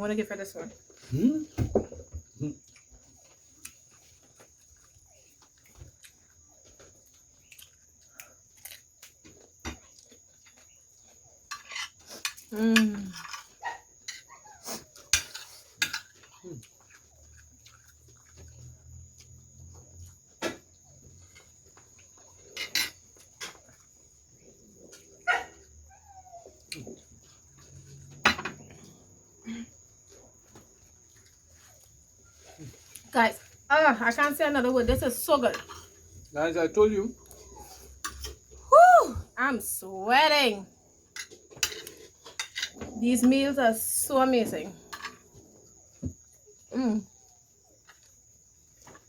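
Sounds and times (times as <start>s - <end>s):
quiet chewing and mouth noises: 2.2s - 33.7s, 35.5s - 38.6s, 44.8s - 49.0s
cutlery on a plate: 11.5s - 14.3s, 15.1s - 16.2s, 22.6s - 23.6s, 35.5s - 35.9s, 38.0s - 38.4s, 41.1s - 42.9s, 44.9s - 45.2s.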